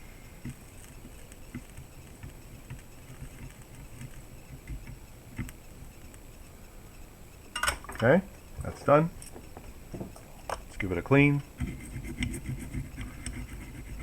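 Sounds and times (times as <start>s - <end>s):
soldering iron light taps: 0.4s - 6.2s.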